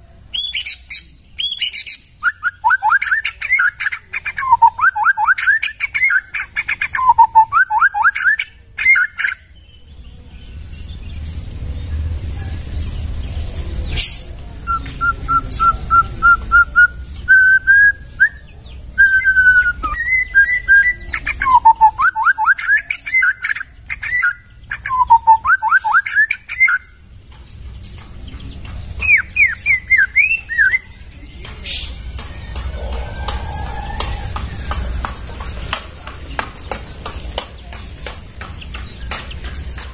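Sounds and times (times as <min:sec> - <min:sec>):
songbird whistling: 0:00.3 - 0:09.5, 0:14.0 - 0:27.0, 0:29.0 - 0:31.0.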